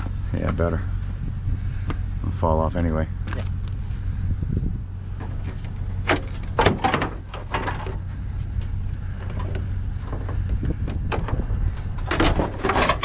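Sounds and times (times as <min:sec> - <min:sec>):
vehicle engine humming: 0:00.0 - 0:13.0
metal knocking and clattering: 0:05.2 - 0:13.0.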